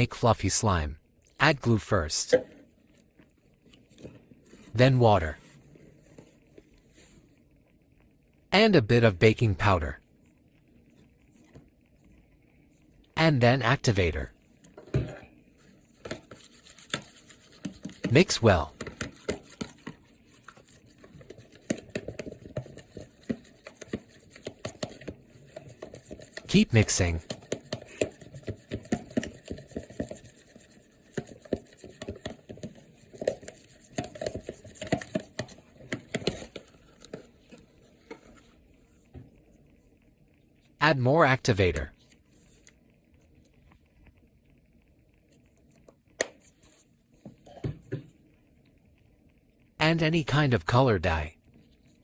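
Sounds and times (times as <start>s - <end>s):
slime being stirred in a bowl: 14.2s - 40.0s
sticky squelches: 16.1s - 36.5s.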